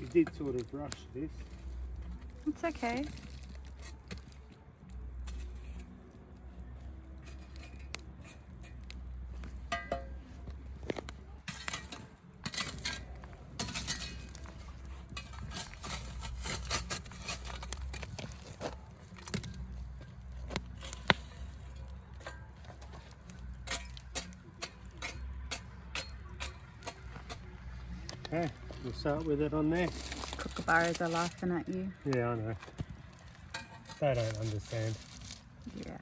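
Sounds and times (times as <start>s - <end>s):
metal cookware clinking: 9.7s - 10.3s, 11.3s - 18.1s, 19.1s - 31.4s, 33.3s - 34.5s.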